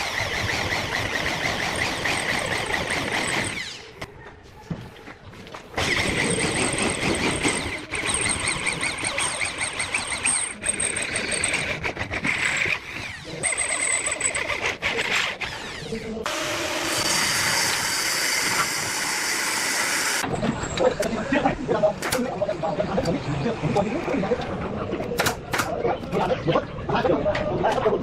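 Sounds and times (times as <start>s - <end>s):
electric drill drilling metal: 12.4s - 20.2s.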